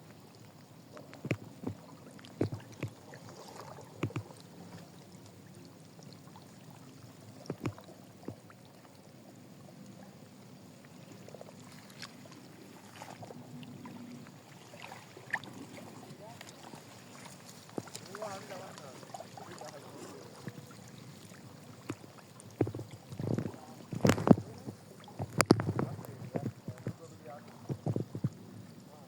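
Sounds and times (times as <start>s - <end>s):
light knocks and taps: 4.0s - 4.3s, 7.5s - 8.4s.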